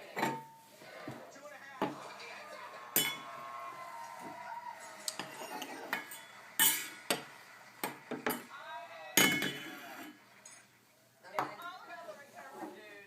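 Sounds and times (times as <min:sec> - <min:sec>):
metal kitchenware clanking: 0:02.9 - 0:03.4, 0:05.1 - 0:07.2, 0:09.2 - 0:10.2.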